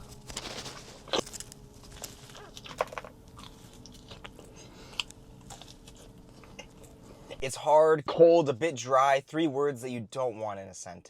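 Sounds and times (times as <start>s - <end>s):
person chewing a cookie: 0.1s - 7.4s.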